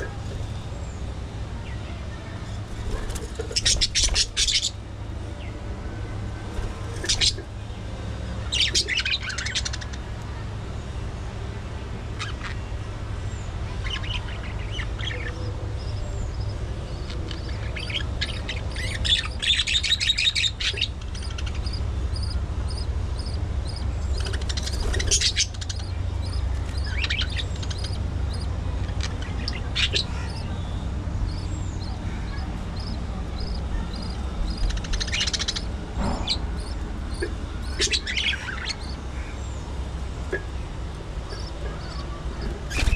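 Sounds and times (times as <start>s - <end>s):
steady low hum: 0.0s - 42.9s
budgerigars chirping and chattering: 2.7s - 4.8s, 6.6s - 7.5s, 8.4s - 10.1s, 12.2s - 12.7s, 13.4s - 40.7s, 41.3s - 42.9s.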